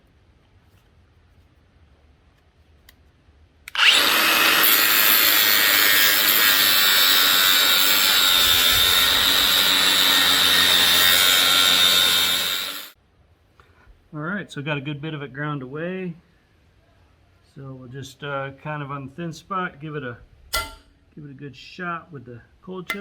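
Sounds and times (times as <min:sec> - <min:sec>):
power grinder grinding steel: 0:03.7 - 0:13.0.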